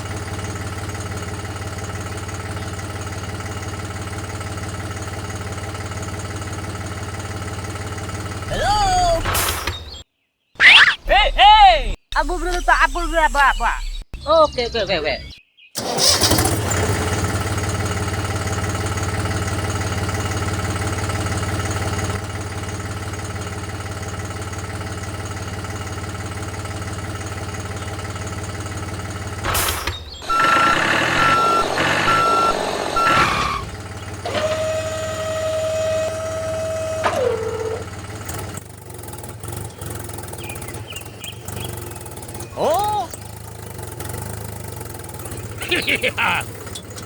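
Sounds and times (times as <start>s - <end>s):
small engine running: 0.0s - 10.0s, 15.8s - 47.0s
short beeps: 30.3s - 33.6s.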